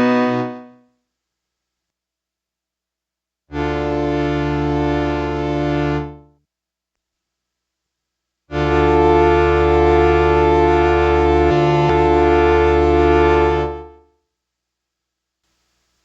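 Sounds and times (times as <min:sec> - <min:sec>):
keyboard chord with delay: 0:08.5 - 0:14.0.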